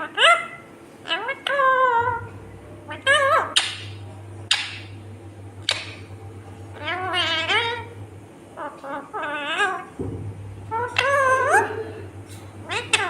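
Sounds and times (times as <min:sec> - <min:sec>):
parrot screeching and calling: 0:00.0 - 0:02.2, 0:06.8 - 0:07.9, 0:08.6 - 0:09.9, 0:10.7 - 0:11.8, 0:12.6 - 0:13.0.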